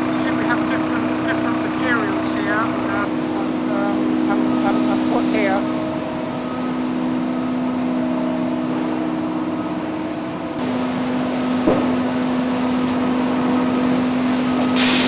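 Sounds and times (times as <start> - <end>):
processing machinery humming: 0.0 - 15.0.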